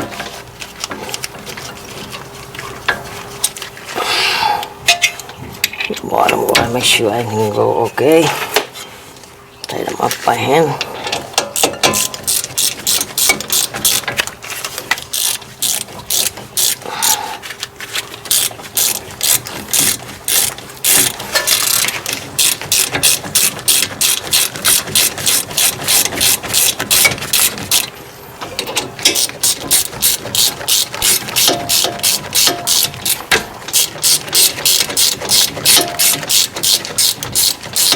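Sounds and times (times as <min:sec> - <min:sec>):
hand ratchet clicking: 0:11.4 - 0:17.2, 0:18.2 - 0:27.9, 0:28.7 - 0:37.9.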